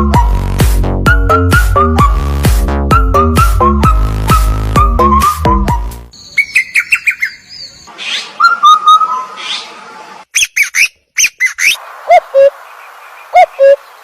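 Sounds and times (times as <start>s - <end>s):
electronic dance music: 0.0s - 6.1s
bird chirping and whistling: 3.0s - 9.7s, 10.3s - 12.5s, 13.4s - 13.8s.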